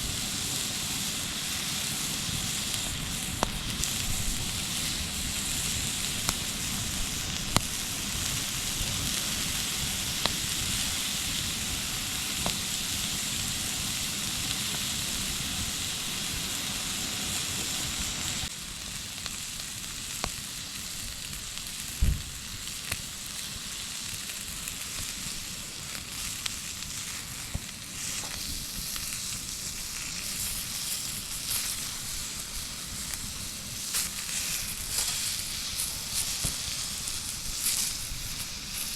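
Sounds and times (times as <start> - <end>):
fire pops: 0.0 - 16.5, 19.2 - 38.9
campfire sizzling hiss: 0.0 - 38.9
heavy knock: 22.0 - 22.3.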